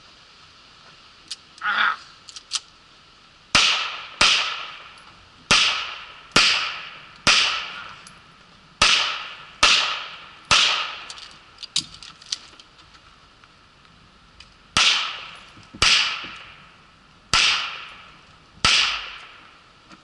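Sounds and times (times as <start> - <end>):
handgun shots echoing: 5.5 - 7.9, 8.8 - 11.2, 14.8 - 16.4, 17.4 - 18.0, 18.6 - 19.4.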